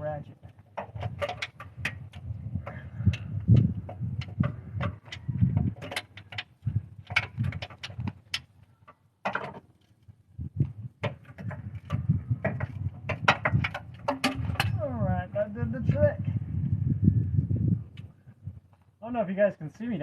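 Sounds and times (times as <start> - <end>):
metal tools knocking: 0.7 - 8.5, 11.0 - 14.8.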